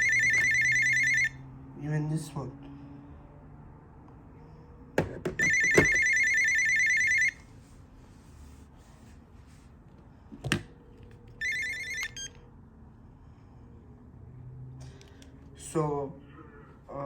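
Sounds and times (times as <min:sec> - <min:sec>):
cordless phone ringing: 0:00.0 - 0:01.4, 0:05.3 - 0:07.4, 0:11.3 - 0:12.6
handset knocks: 0:05.0 - 0:06.1.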